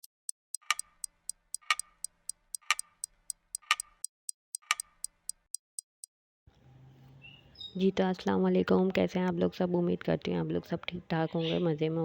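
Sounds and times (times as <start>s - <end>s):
light mechanical ticks: 0.0s - 6.1s.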